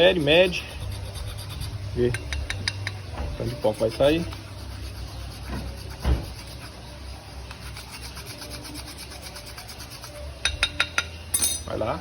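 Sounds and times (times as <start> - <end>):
hand file rasping: 0.0 - 10.6
knock: 5.5 - 6.3.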